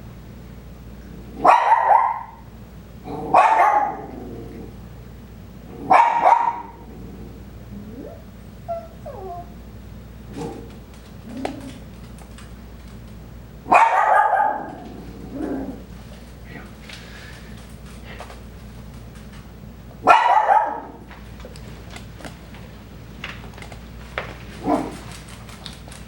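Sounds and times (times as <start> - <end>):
dogs barking: 1.3 - 4.5, 5.7 - 7.0, 10.3 - 11.9, 13.6 - 15.9, 20.0 - 21.2, 24.6 - 25.2
dog whining: 7.7 - 9.7.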